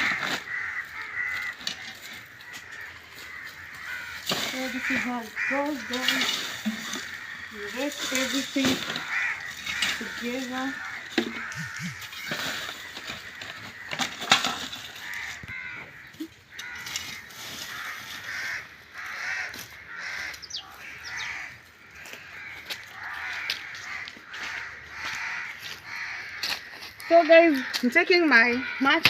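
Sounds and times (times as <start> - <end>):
harsh bird calls: 0.0 - 14.0, 15.0 - 29.0
rake scraping dirt: 0.0 - 20.2.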